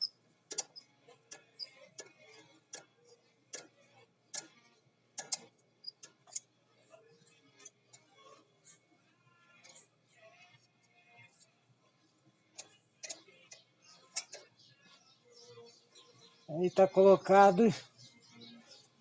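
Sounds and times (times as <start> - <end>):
metallic clicks and taps: 5.2 - 6.5, 12.6 - 14.5.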